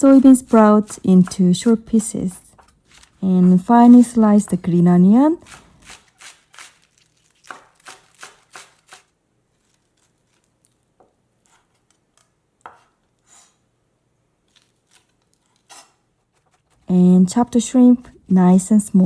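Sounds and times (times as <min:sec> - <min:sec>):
knife slicing on cutting board: 0:05.4 - 0:10.5.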